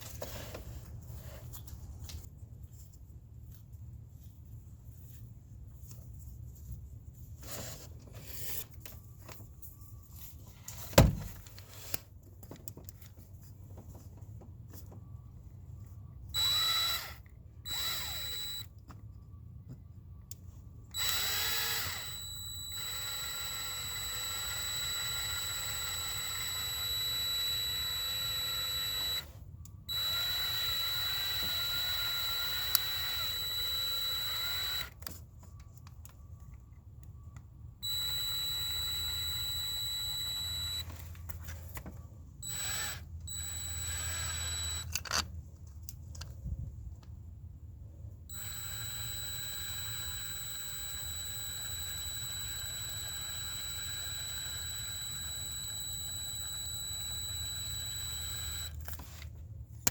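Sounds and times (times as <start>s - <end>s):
power drill running: 16.4s - 18.7s, 20.9s - 35.0s, 37.8s - 40.9s, 42.4s - 45.0s, 48.3s - 58.8s.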